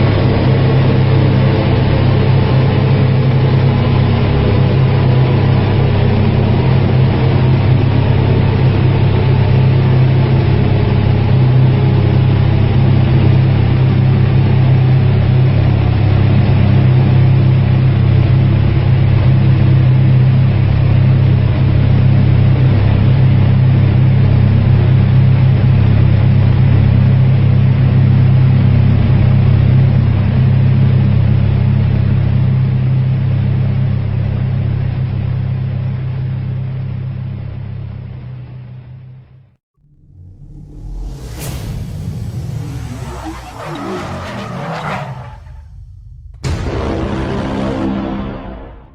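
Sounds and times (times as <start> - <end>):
car engine droning on dynamometer: 0.0 - 39.0, 39.8 - 48.9.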